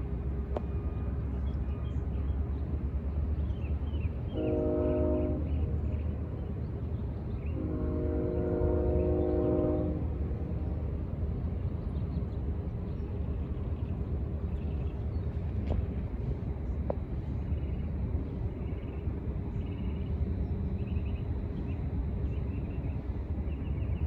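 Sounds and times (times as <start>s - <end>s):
freight train rumbling past: 0.0s - 24.0s
locomotive horn: 4.3s - 5.5s, 7.6s - 10.2s.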